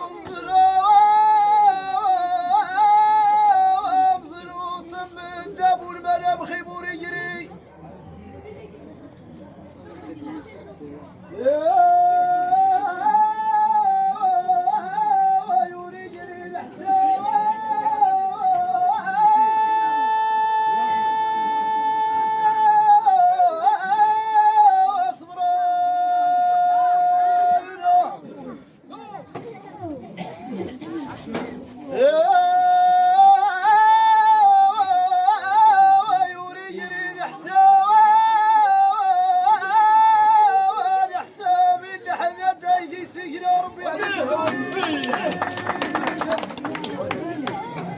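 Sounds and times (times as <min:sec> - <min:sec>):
high wordless singing voice: 0:31.9 - 0:45.4.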